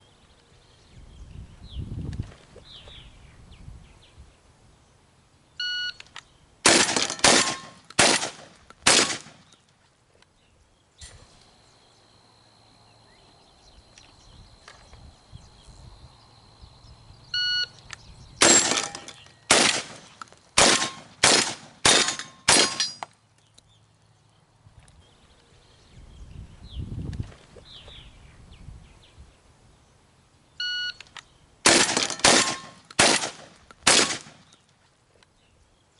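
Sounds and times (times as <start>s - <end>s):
short electronic beep: 5.6s - 6.0s, 17.3s - 17.7s, 30.6s - 31.0s
shotgun shots: 6.6s - 9.5s, 18.4s - 23.0s, 31.6s - 34.5s.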